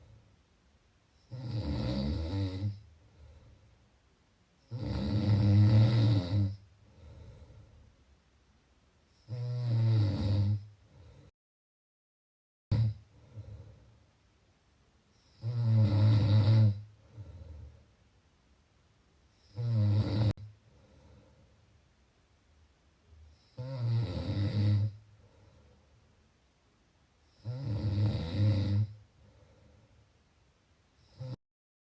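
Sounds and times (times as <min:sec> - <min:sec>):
quiet breathing: 0:00.0 - 0:09.6, 0:10.3 - 0:11.4, 0:12.8 - 0:16.0, 0:16.6 - 0:31.4
person snoring: 0:01.2 - 0:03.4, 0:04.6 - 0:07.6, 0:09.2 - 0:11.3, 0:12.7 - 0:13.8, 0:15.3 - 0:17.8, 0:19.4 - 0:21.3, 0:23.3 - 0:25.0, 0:27.3 - 0:29.5, 0:31.0 - 0:31.4
soft breath: 0:02.9 - 0:04.0, 0:06.8 - 0:08.2, 0:10.7 - 0:11.3, 0:13.0 - 0:14.3, 0:16.8 - 0:18.2, 0:20.4 - 0:21.9, 0:25.0 - 0:26.2, 0:29.0 - 0:30.3.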